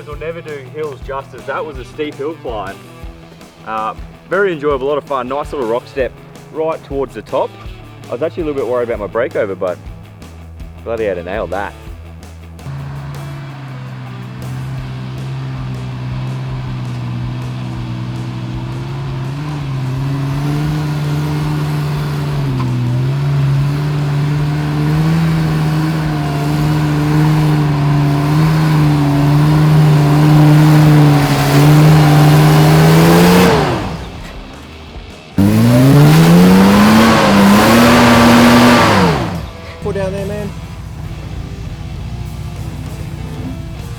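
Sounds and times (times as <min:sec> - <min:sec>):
engine revving up sharply: 0:12.6 - 0:34.8, 0:35.4 - 0:43.9
engine running at high revs: 0:12.6 - 0:43.9.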